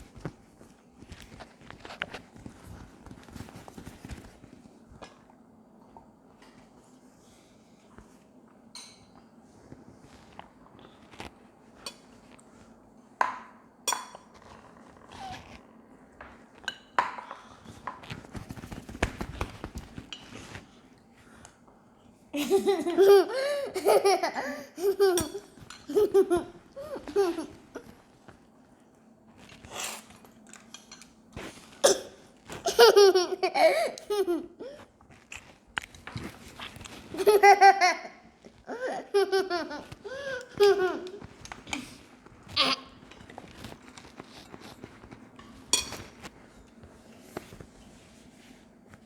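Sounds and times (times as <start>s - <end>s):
child laughing: 22.4s - 27.9s, 32.6s - 34.9s, 37.2s - 41.2s, 42.6s - 42.9s.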